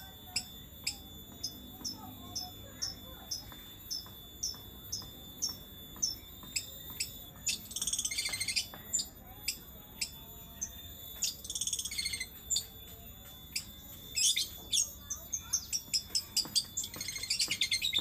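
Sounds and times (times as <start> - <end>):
songbird chattering trill: 0.0 - 12.7, 13.5 - 18.0
songbird chip calls: 0.3 - 10.2.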